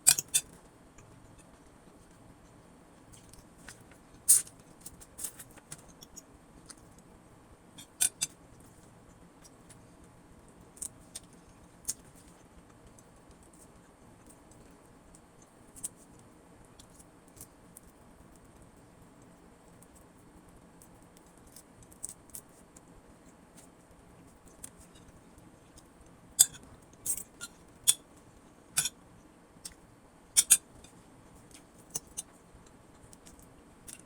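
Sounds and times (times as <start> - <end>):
utensils clicking on a plate: 0.1 - 0.6, 7.8 - 8.4, 26.4 - 28.0, 28.8 - 29.0, 30.4 - 30.9, 33.2 - 34.0.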